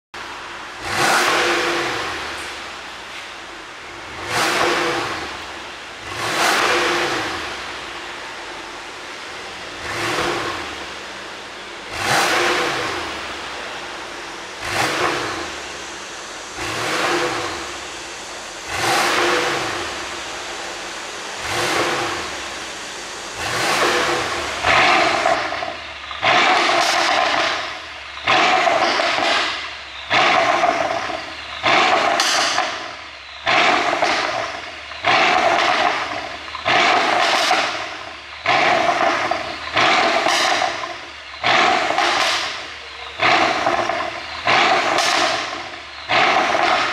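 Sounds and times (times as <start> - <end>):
car engine revving: 0.1 - 46.9
exhaust pops and crackles: 23.4 - 46.9.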